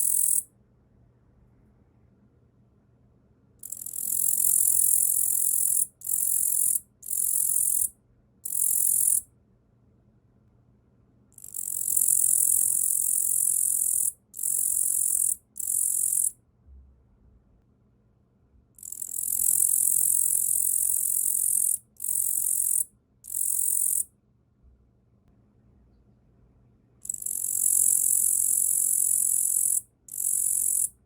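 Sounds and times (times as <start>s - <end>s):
katydid buzzing trill: 0.0s - 0.4s, 3.6s - 7.9s, 8.5s - 9.2s, 11.4s - 16.3s, 18.8s - 24.0s, 27.1s - 30.9s.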